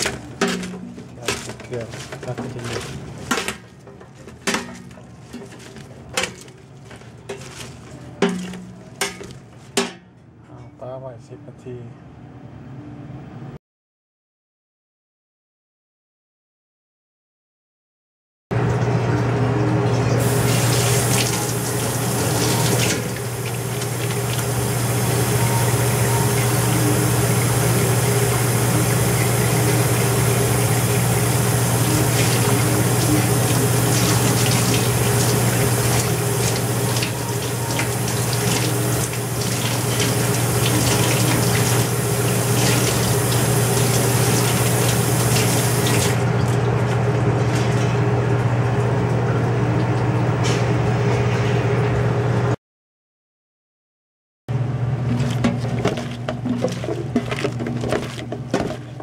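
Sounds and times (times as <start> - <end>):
low mechanical hum: 0.0 - 13.6, 18.6 - 52.6, 54.5 - 59.0
running water from a tap: 20.1 - 49.1.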